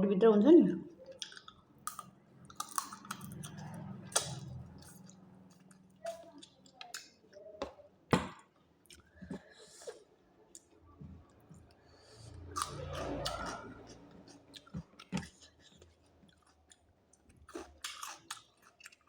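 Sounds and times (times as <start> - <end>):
person chewing: 1.0 - 7.4, 8.8 - 19.0
mouth clicks and smacks: 4.1 - 5.1.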